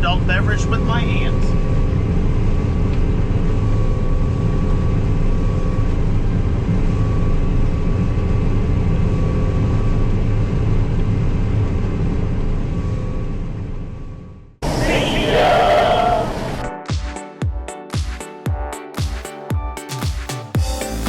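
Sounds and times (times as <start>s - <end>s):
combine harvester engine drone: 0.0s - 16.7s
thin steady whine: 14.6s - 16.7s.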